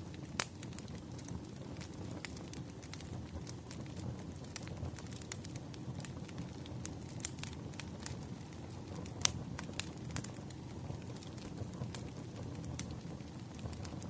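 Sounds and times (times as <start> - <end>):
campfire crackling and popping: 0.0 - 14.0
low rumble of burning: 0.0 - 14.0.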